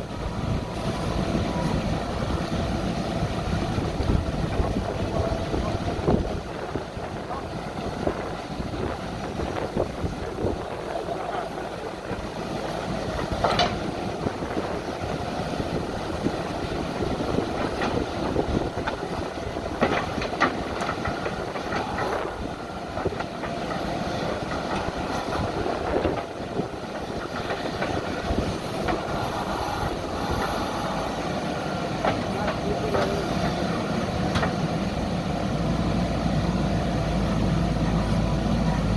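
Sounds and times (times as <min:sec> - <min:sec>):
diesel engine of heavy machinery: 0:00.0 - 0:38.9
metal clanks and knocks: 0:13.2 - 0:13.9.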